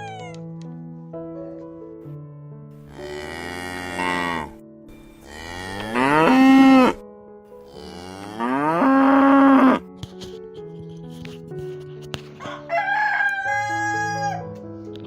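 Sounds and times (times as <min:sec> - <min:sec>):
soft background music: 0:00.0 - 0:15.0
cow mooing: 0:02.8 - 0:07.0, 0:07.6 - 0:09.8.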